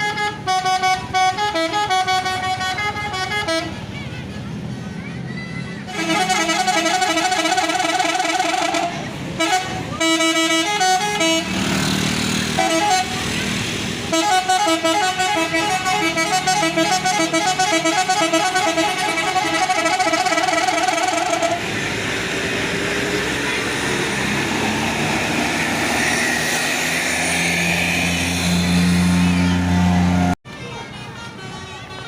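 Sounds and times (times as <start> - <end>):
multi-tone musical air horn: 0.0 - 3.8, 5.9 - 11.7, 12.5 - 13.4, 14.1 - 21.7
rushing noise: 21.1 - 30.4.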